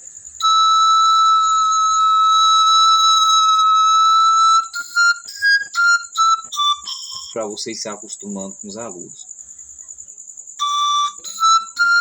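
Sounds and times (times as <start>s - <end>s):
pan flute notes: 0.0s - 7.6s, 10.6s - 12.0s
cricket chirping: 0.0s - 12.0s.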